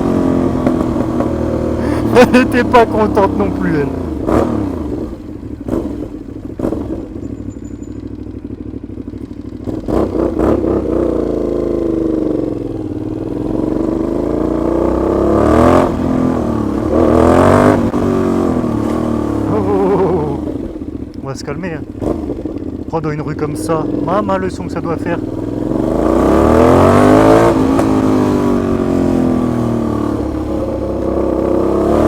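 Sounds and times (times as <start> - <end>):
motorcycle engine revving: 0.0 - 32.0.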